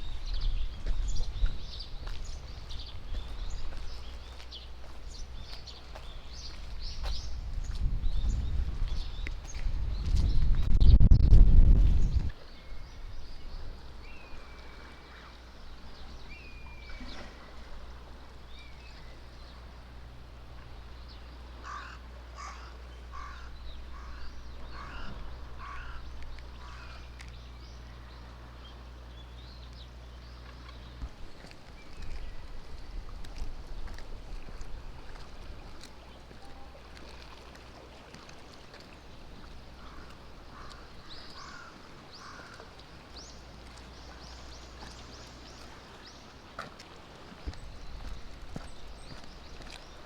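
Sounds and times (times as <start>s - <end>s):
steady low hum: 0.0s - 50.0s
crow cawing: 21.6s - 26.0s, 39.8s - 42.6s
higher bird calls: 21.6s - 27.2s, 39.8s - 43.4s.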